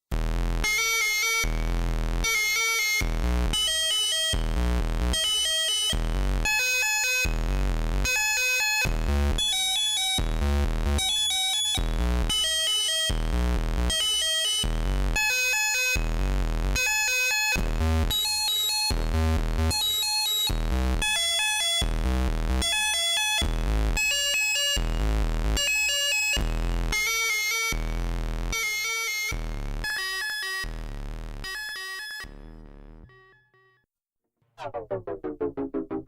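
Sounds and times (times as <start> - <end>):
synthesizer bass notes: 34.6 - 36.0
synthesizer chord stabs: 34.6 - 36.0.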